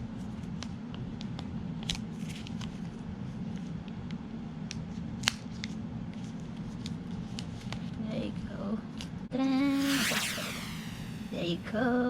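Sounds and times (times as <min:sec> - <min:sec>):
steady low hum: 0:09.6 - 0:12.0.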